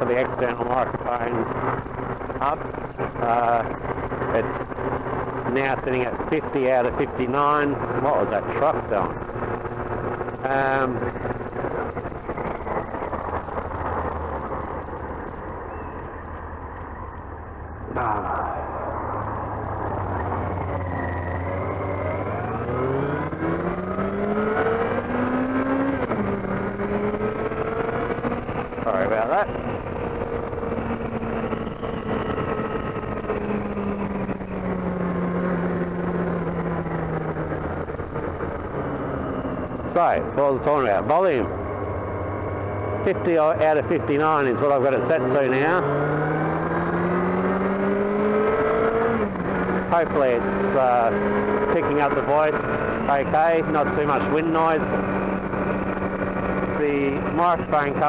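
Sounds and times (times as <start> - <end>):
wind rushing over microphone: 0.0 - 44.7
motorcycle engine running: 0.0 - 58.0.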